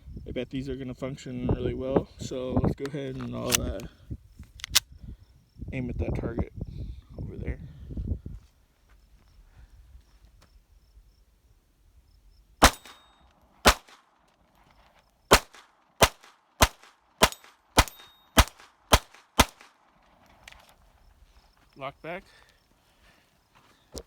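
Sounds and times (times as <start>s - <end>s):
pistol action cycling: 3.2s - 3.8s, 13.7s - 14.0s, 15.3s - 19.8s
pistol shots: 12.6s - 14.0s, 15.3s - 19.8s.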